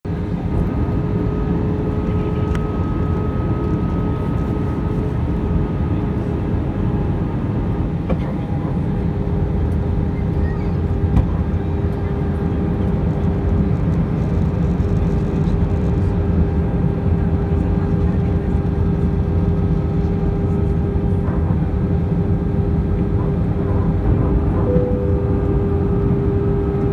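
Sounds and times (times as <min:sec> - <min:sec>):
aircraft cabin engine rumble: 0:00.1 - 0:26.9
steady tones: 0:24.1 - 0:26.9.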